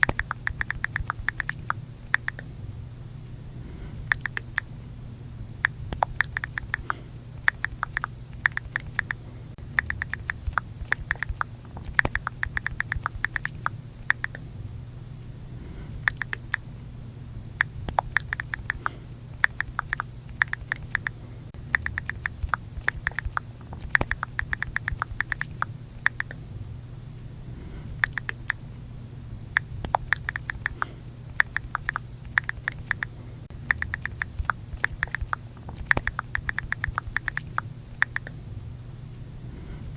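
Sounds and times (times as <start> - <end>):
phone keyboard clicks: 0.0 - 2.4, 4.1 - 4.6, 5.9 - 9.2, 9.8 - 14.4, 16.1 - 16.6, 17.9 - 21.1, 21.8 - 26.4, 28.0 - 28.6, 29.8 - 33.1, 33.7 - 38.3
faint low hum: 0.0 - 39.9.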